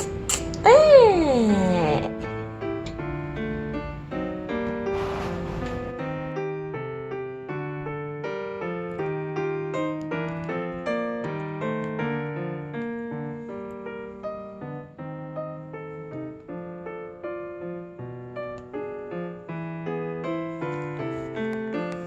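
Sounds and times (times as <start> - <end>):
gentle piano melody: 0.0 - 22.0.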